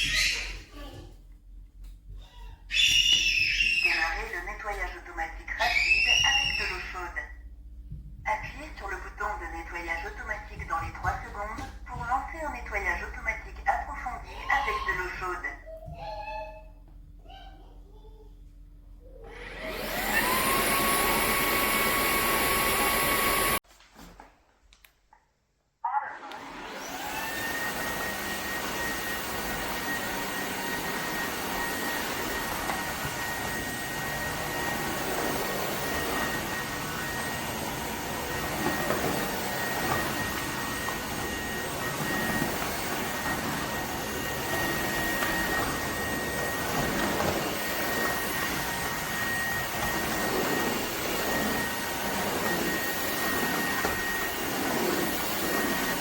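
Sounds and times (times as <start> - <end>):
vacuum cleaner motor whining: 2.7 - 7.0, 19.2 - 23.6, 26.2 - 56.0.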